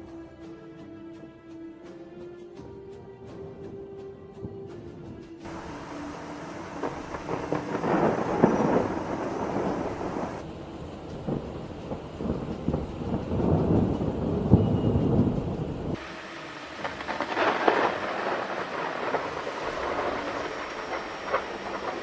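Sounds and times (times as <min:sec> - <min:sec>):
steady rain: 0:03.6 - 0:22.0
thunder rumbling and crackling: 0:05.5 - 0:22.0.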